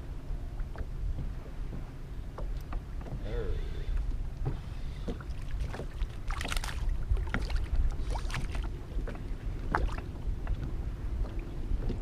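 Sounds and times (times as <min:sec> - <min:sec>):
water lapping against boat: 0:00.0 - 0:12.0
wind buffeting microphone: 0:00.0 - 0:12.0.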